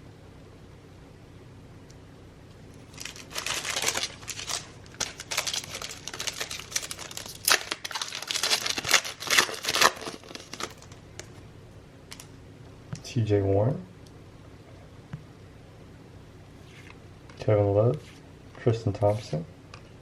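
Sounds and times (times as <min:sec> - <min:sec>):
card pack wrapper crinkling and tearing: 0:02.9 - 0:11.3.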